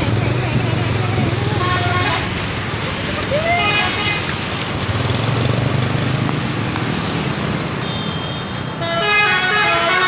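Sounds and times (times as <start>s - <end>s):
bus traffic rumbling: 0.0s - 10.0s
musical bus horn: 1.6s - 2.3s, 8.2s - 10.0s.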